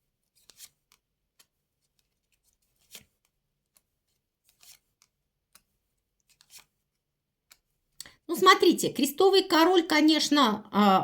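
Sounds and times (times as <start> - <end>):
playing cards flicking on table: 4.5 - 6.8.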